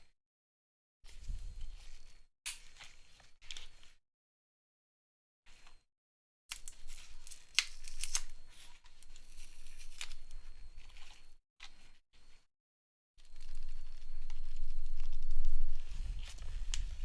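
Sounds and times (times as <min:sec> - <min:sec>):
battery adhesive crackling and tearing: 0:07.0 - 0:08.3.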